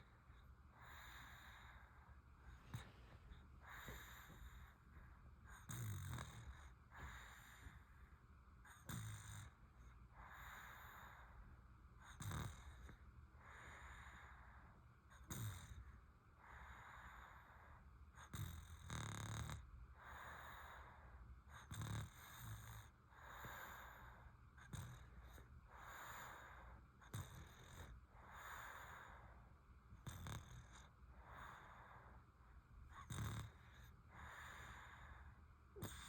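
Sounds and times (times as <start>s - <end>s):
soft breathing: 0.0s - 5.7s, 6.4s - 11.7s, 12.7s - 18.2s, 19.9s - 36.0s
baby snoring faintly: 0.0s - 8.1s, 8.7s - 11.4s, 12.1s - 36.0s.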